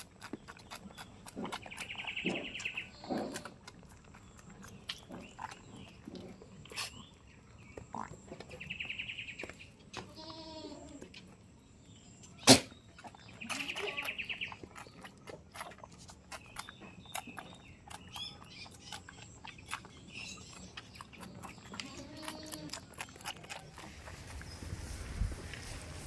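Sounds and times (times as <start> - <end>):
faint goat bleat: 10.0 - 11.1, 13.4 - 14.2, 21.7 - 22.8.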